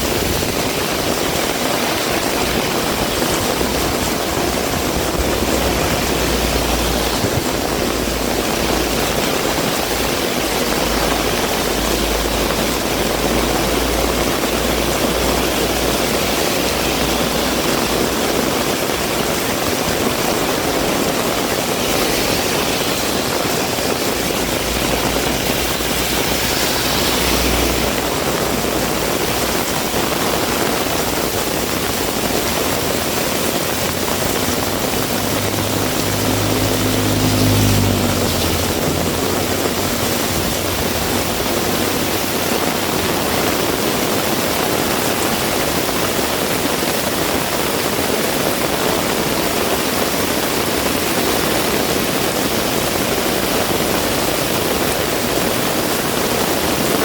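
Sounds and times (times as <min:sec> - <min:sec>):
vehicle engine passing by: 0:00.0 - 0:45.6
heavy rain falling: 0:00.0 - 0:57.0.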